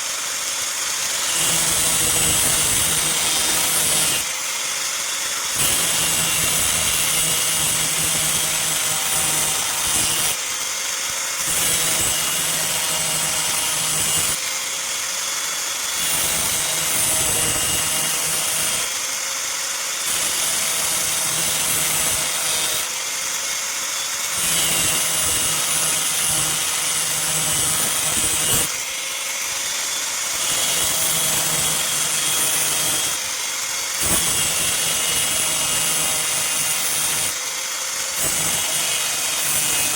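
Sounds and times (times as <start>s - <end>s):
grinder on steel: 0.0s - 39.9s.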